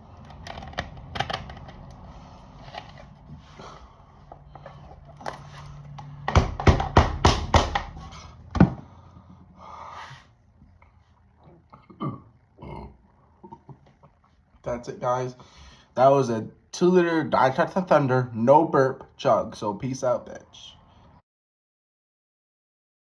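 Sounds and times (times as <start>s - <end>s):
loud sharp knocks: 6.2s - 8.0s.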